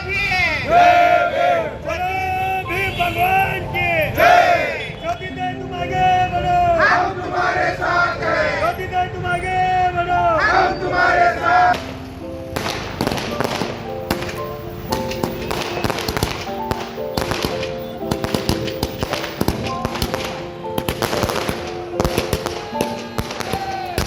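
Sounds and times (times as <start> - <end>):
music with held notes: 11.8 - 24.0
firecrackers crackling: 12.6 - 24.0.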